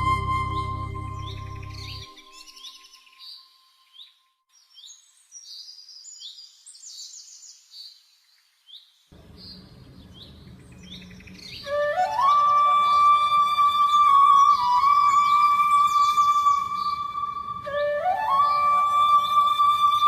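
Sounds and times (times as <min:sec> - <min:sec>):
small birds chirping: 0:00.0 - 0:20.0
faint low background noise: 0:04.5 - 0:20.0.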